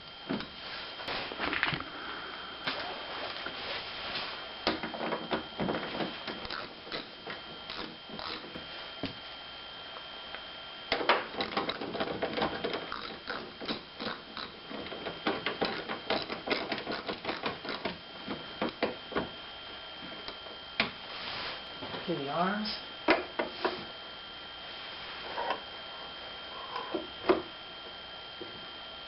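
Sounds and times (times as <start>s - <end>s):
ratchet clicking: 7.7s - 8.5s.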